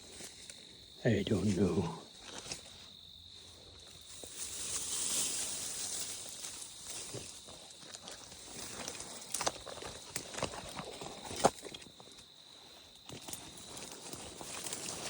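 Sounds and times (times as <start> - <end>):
footsteps through dry brush: 1.5 - 15.0
twigs snapping underfoot: 4.0 - 12.3.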